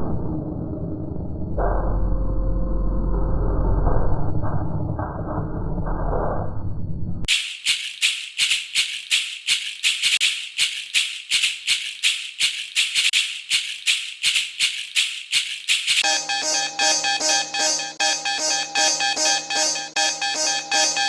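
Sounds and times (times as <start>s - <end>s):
hissing alarm bursts: 16.0s - 21.0s
low muffled alarm: 16.0s - 21.0s.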